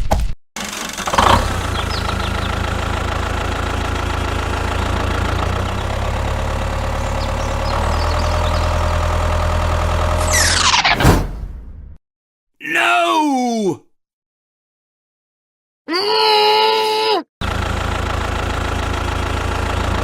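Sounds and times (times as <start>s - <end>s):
engine idling: 0.6s - 10.2s, 17.4s - 20.0s.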